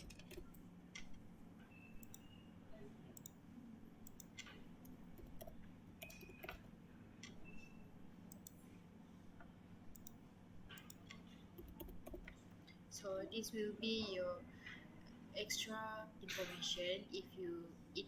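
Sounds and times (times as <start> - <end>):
keyboard and mouse clicks: 0.0 - 1.2, 2.0 - 2.4, 3.2 - 3.4, 4.0 - 8.6, 9.9 - 12.4.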